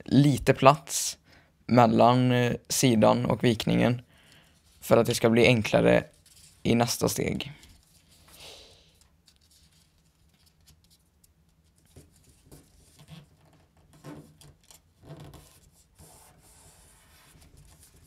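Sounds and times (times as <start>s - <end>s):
paper being folded and creased: 6.0s - 6.7s, 9.0s - 18.0s.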